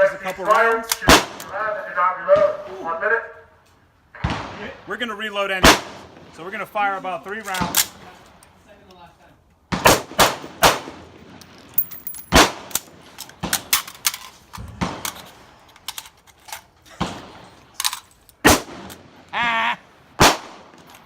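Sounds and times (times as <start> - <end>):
sharp gunshots with echo: 20.2 - 20.7.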